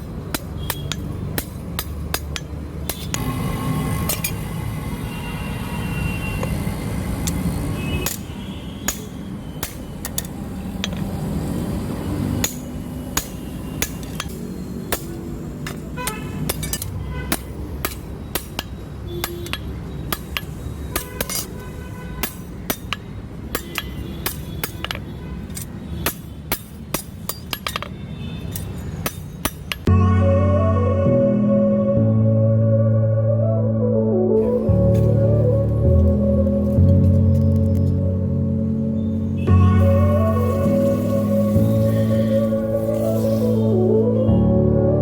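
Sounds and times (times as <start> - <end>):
hammer striking steel on anvil: 8.9 - 11.0, 12.4 - 21.5, 22.2 - 25.0, 25.6 - 27.9
loud music: 29.9 - 37.1, 38.0 - 45.0.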